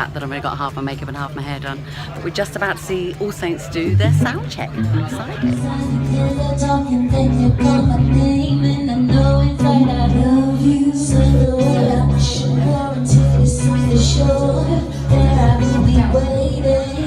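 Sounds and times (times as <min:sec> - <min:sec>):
woman singing: 0:02.2 - 0:17.0
pop music with bass line: 0:03.9 - 0:17.0.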